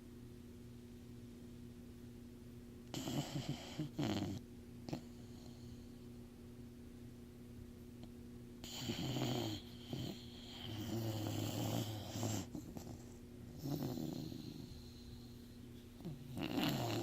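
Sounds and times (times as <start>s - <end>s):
pet snoring: 2.9s - 5.9s, 8.6s - 17.0s.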